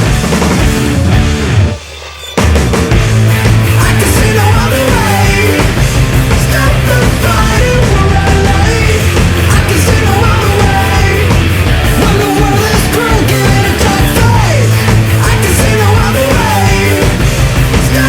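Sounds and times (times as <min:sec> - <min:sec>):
loud rock music: 0:00.0 - 0:18.0
sung or shouted vocals: 0:03.7 - 0:18.0.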